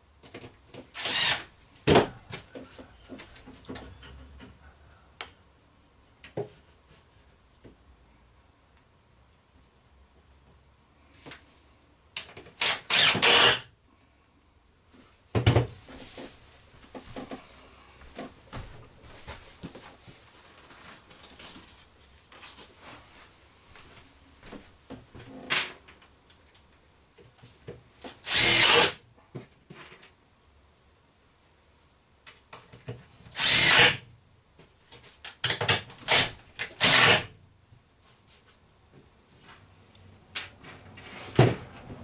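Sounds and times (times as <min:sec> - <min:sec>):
power drill driving screws: 0:01.0 - 0:01.5, 0:12.6 - 0:13.6, 0:28.2 - 0:29.0, 0:33.4 - 0:34.0, 0:36.1 - 0:37.3
light knocks and handling noise: 0:01.8 - 0:05.4, 0:06.0 - 0:07.9.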